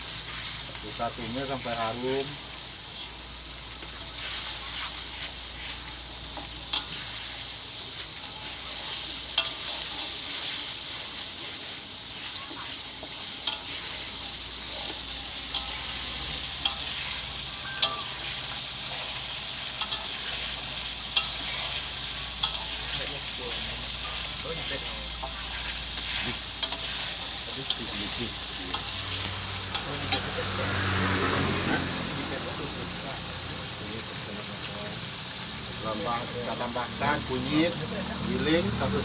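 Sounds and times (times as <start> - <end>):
paste sizzling in hot oil: 0.0 - 39.0.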